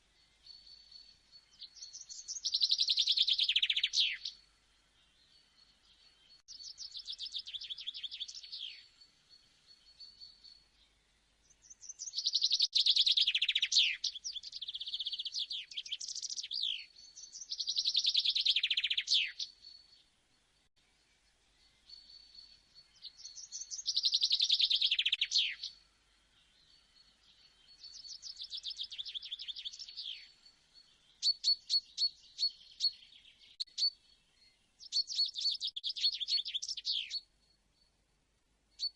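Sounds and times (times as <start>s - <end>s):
songbird trilling: 0.5s - 4.4s, 11.6s - 19.6s, 21.9s - 25.8s, 26.5s - 37.3s
sharp bird chirps: 26.5s - 37.3s.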